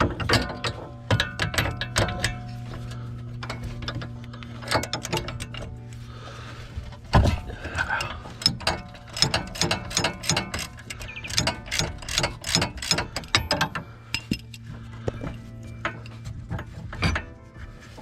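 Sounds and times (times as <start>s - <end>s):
ratchet wrench clicking: 8.4s - 14.6s.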